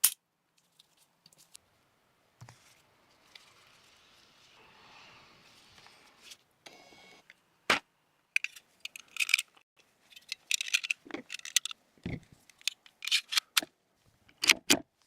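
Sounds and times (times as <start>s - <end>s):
pistol parts clicking and rattling: 8.4s - 11.8s, 12.4s - 13.7s.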